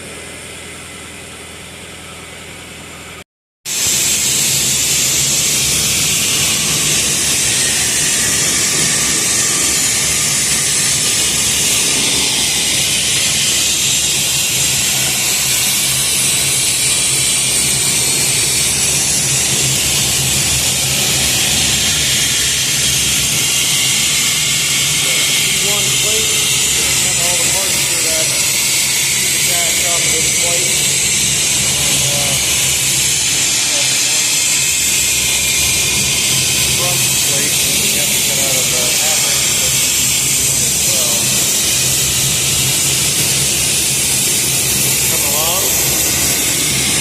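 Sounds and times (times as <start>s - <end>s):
cutting torch hissing: 3.7s - 47.0s
low hum: 3.8s - 47.0s.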